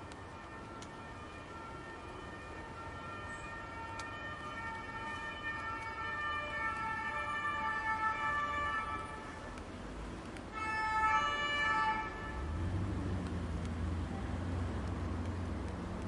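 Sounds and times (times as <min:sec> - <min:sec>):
two-tone police siren: 0:00.0 - 0:09.5, 0:10.5 - 0:12.8
street traffic noise: 0:00.0 - 0:16.0.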